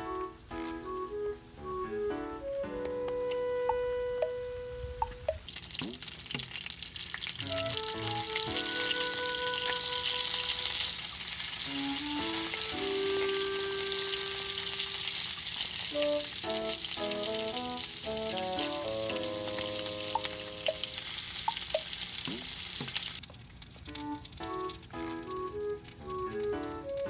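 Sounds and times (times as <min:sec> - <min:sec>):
background music: 0:00.0 - 0:05.4, 0:07.4 - 0:10.9, 0:11.7 - 0:14.9, 0:15.9 - 0:21.0, 0:23.9 - 0:27.0
food sizzling in hot oil: 0:05.4 - 0:27.0.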